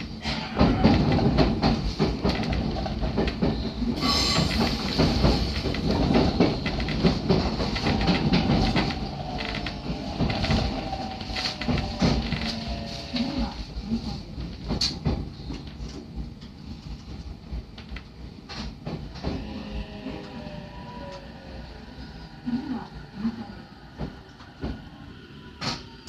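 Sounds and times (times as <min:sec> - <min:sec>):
train wheels clicking over rail joints: 0:00.0 - 0:13.7, 0:14.3 - 0:20.0
train rumble: 0:00.0 - 0:26.0.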